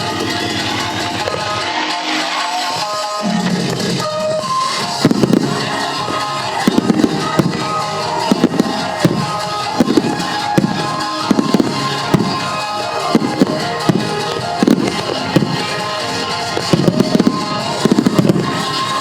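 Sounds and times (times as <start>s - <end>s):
fireworks bursting: 0.0s - 19.0s
music playing: 0.0s - 19.0s.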